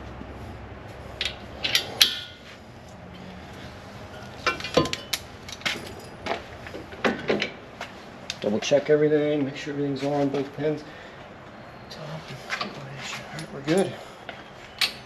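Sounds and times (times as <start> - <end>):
low steady hum: 0.0 - 15.0
metal pins clanking: 1.2 - 2.5, 4.2 - 7.6.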